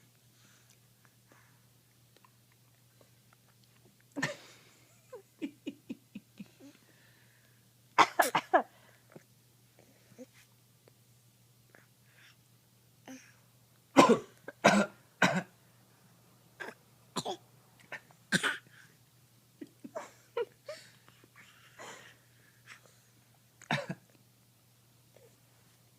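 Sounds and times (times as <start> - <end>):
person fake coughing: 14.0 - 15.5, 23.7 - 24.0.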